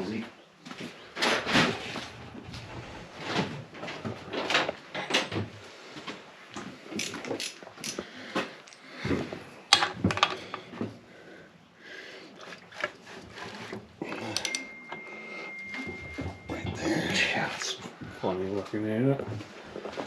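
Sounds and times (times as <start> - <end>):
metallic clicks and clunks: 14.1 - 16.8.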